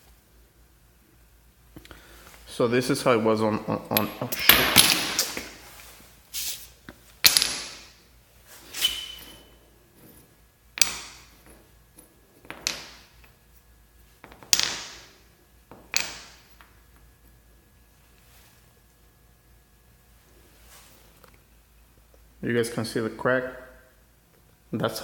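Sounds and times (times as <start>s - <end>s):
metal parts knocking on hard surface: 12.4s - 13.2s.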